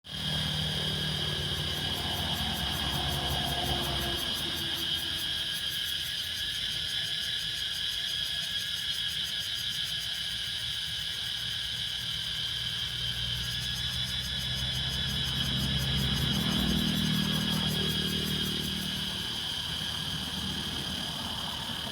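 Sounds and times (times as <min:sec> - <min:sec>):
vehicle engine rumble: 0:00.1 - 0:05.5, 0:13.0 - 0:21.9
cicadas buzzing: 0:00.1 - 0:21.9.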